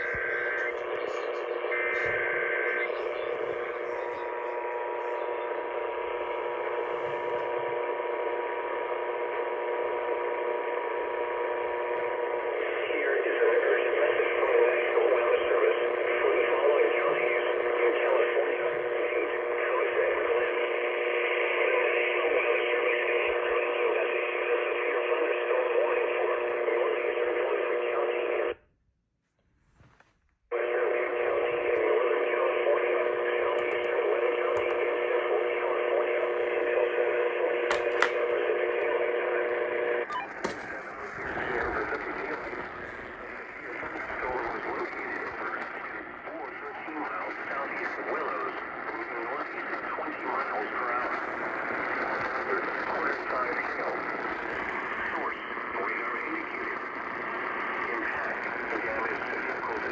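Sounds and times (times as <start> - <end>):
radio static and hiss: 0.0 - 28.6, 30.5 - 59.9
faint murmur: 30.6 - 59.9.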